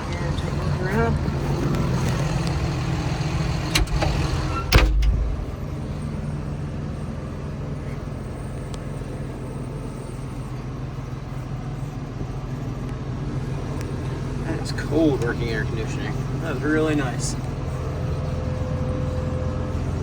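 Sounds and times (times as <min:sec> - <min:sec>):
bulldozer diesel engine idling: 0:00.0 - 0:20.0
cab door shutting thump: 0:03.6 - 0:05.7.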